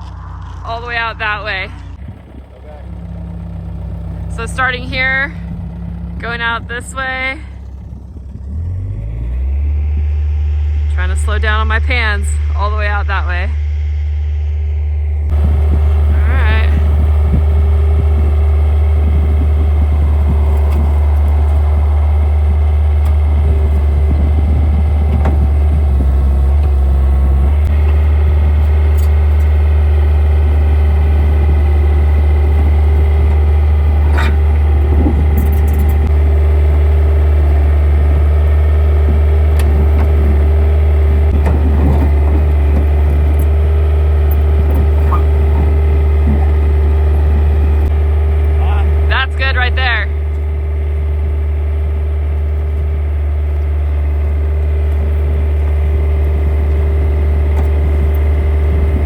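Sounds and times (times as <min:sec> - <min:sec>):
skid steer engine humming: 0:00.0 - 0:59.0.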